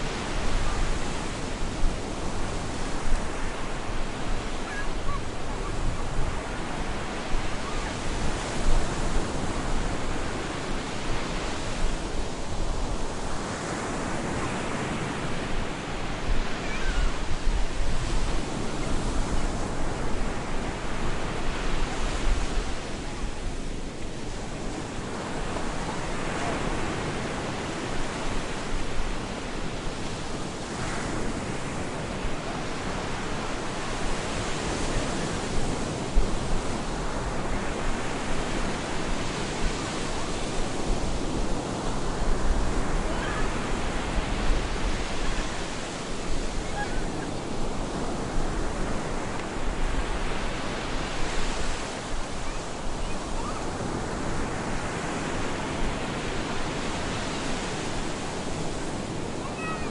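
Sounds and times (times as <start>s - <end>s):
surf breaking on a beach: 0.0s - 59.9s.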